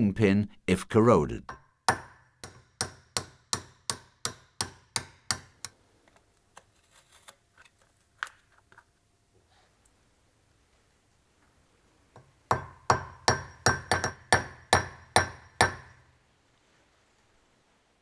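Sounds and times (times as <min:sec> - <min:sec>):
hammer tapping metal: 0:01.5 - 0:05.8, 0:12.2 - 0:16.0.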